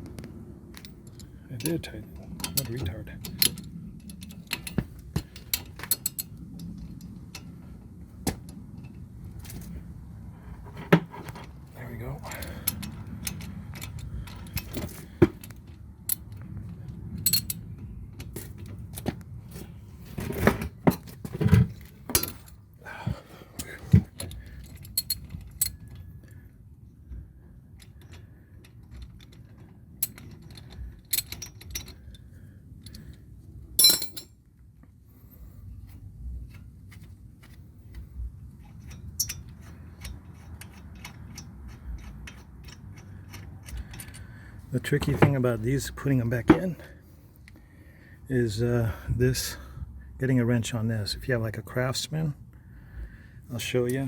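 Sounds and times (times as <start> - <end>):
low background hum: 0.0 - 54.0
metal tools clinking and knocking: 0.7 - 7.5, 12.1 - 16.4, 17.2 - 19.1, 20.2 - 22.6, 23.6 - 26.0, 27.8 - 32.2, 33.8 - 34.4, 35.9 - 47.0.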